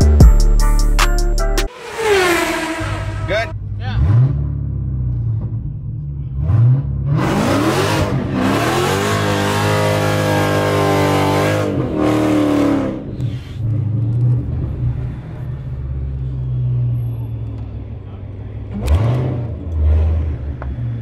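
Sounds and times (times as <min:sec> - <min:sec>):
race car engines revving: 0:01.7 - 0:21.0.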